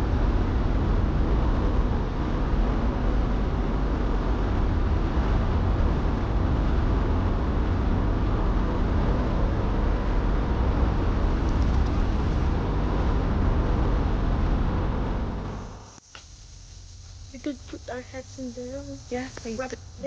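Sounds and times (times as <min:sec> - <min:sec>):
car road and engine noise: 0:00.0 - 0:16.0.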